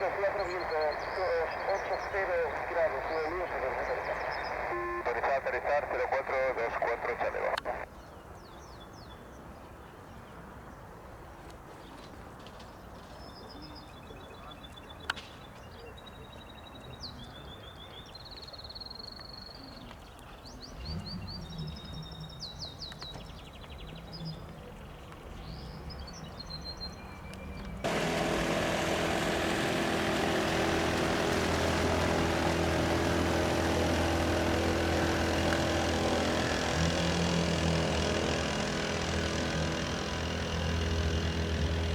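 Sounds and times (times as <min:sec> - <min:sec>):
turboprop engines droning: 0:00.0 - 0:07.8, 0:27.8 - 0:41.9
birds chirping: 0:00.0 - 0:12.0, 0:12.7 - 0:41.9
outdoor background noise: 0:00.0 - 0:41.9.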